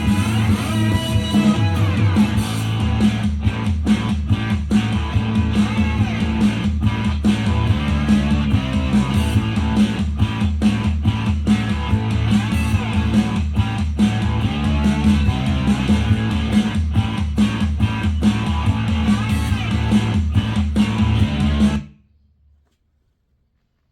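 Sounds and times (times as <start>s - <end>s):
guitar pop song on speaker: 0.0s - 21.9s.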